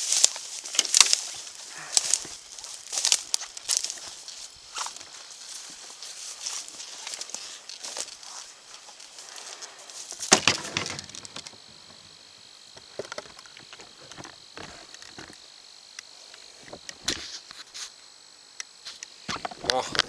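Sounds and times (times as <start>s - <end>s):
rustling in dry leaves: 0.0s - 12.4s
loud crunch: 0.0s - 15.4s.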